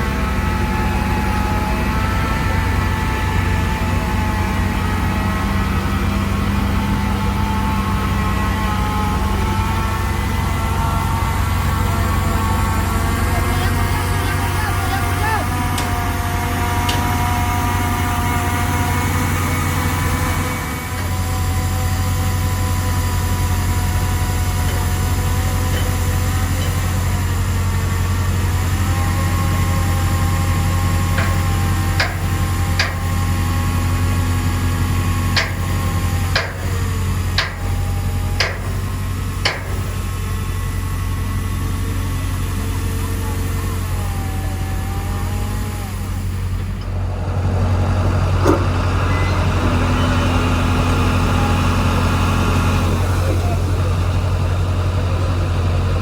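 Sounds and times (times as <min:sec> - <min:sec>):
diesel engine under load: 0:00.0 - 0:56.0
metallic clanks: 0:31.1 - 0:33.3, 0:35.3 - 0:40.1, 0:46.6 - 0:51.0.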